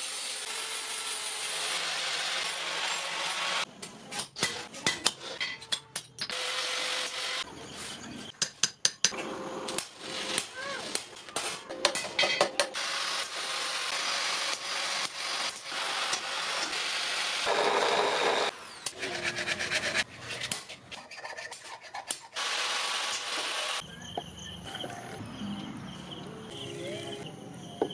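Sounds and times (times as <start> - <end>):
tool rasping and rubbing: 17.6 - 23.8
insects chirping: 23.8 - 27.9.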